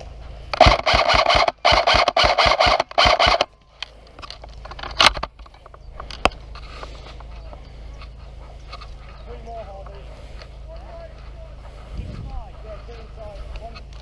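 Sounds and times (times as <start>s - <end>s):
airsoft gun firing bursts: 0.5s - 3.5s
airsoft gun single shots: 0.5s - 3.5s.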